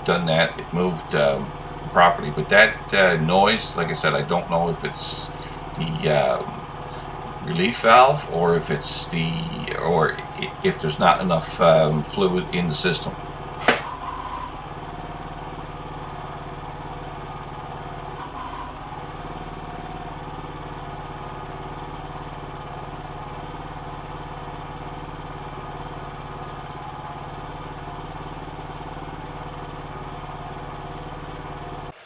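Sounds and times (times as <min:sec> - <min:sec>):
small gasoline engine running: 0:00.0 - 0:32.0
hydraulics noise: 0:12.8 - 0:14.6
sharp knock: 0:13.6 - 0:14.0.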